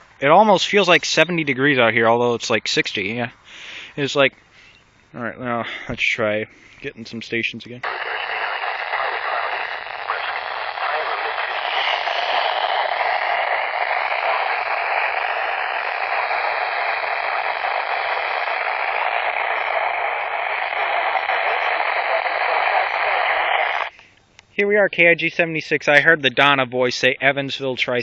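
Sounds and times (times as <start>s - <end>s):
radio static hiss: 6.8s - 24.0s.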